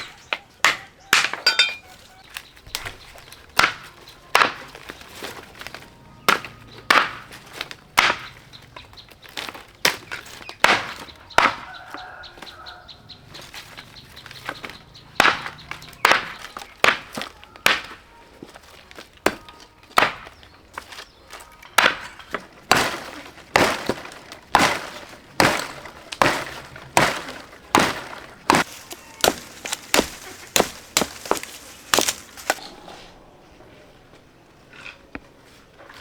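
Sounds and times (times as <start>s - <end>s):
sharp chopping strikes: 5.6s - 8.4s, 9.4s - 11.7s, 15.2s - 18.6s, 22.7s - 32.6s.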